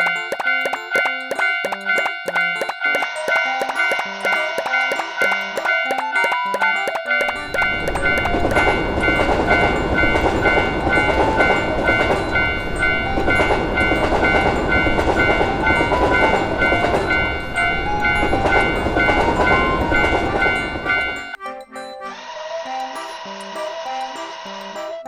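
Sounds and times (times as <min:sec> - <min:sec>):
railroad crossing bell ringing: 0:00.0 - 0:25.0
train rushing past: 0:07.4 - 0:21.2.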